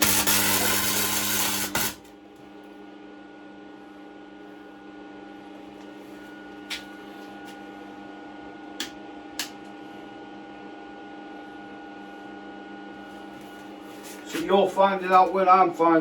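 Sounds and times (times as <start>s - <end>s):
welder humming: 0.0s - 2.5s.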